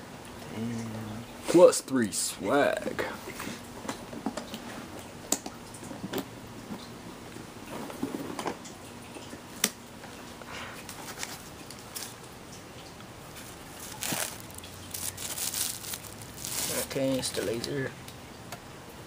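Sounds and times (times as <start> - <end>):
packaging rustle: 11.0 - 12.2, 13.4 - 17.6.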